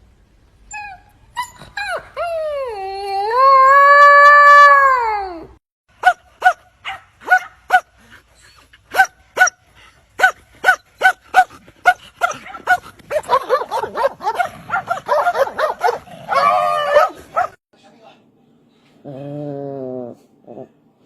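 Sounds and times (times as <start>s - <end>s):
dog yelping and whining: 0.7s - 3.6s, 12.2s - 17.6s
dog barking: 6.0s - 7.9s, 8.9s - 9.6s, 10.2s - 17.6s.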